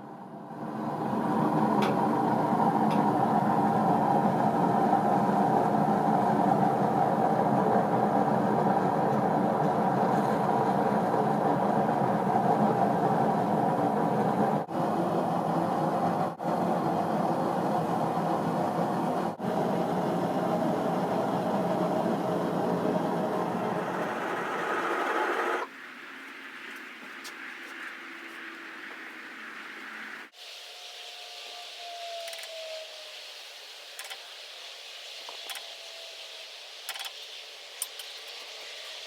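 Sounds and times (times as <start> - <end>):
propane burner roaring: 0.0 - 30.5.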